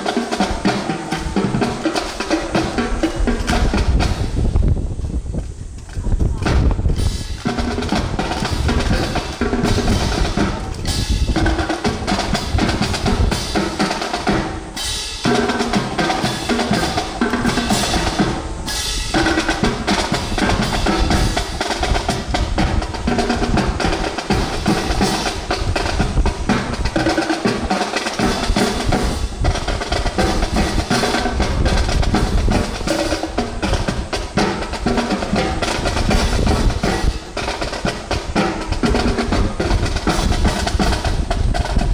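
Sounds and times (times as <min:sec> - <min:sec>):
percussion music with drum rolls: 0:00.0 - 0:41.9.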